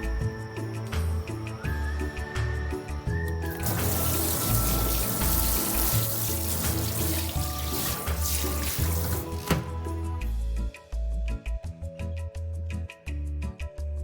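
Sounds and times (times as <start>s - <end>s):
background music: 0.0s - 14.0s
tap water running into sink: 3.5s - 9.8s.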